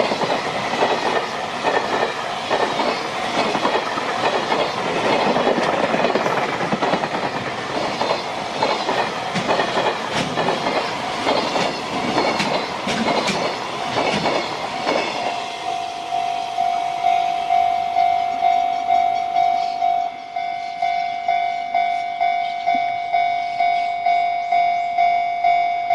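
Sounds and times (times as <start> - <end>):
train wheels clattering over rail joints: 0.0 - 15.4.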